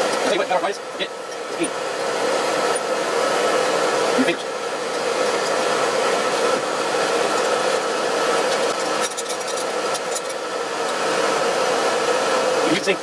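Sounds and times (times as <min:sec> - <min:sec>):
steady whooshing hum: 0:00.0 - 0:13.0
steel wool scratching metal: 0:04.9 - 0:10.4.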